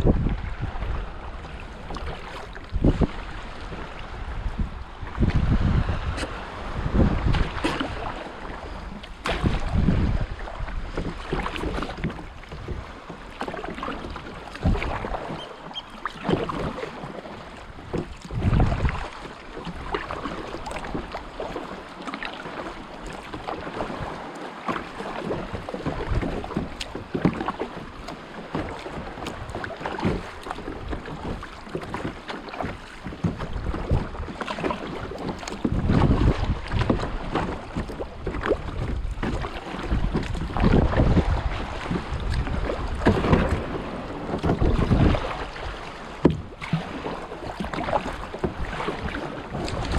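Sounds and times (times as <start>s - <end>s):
wind gusts on microphone: 0.0s - 12.9s, 17.7s - 19.2s, 35.3s - 47.1s, 47.8s - 49.9s
paddle splashing in water: 0.0s - 49.9s.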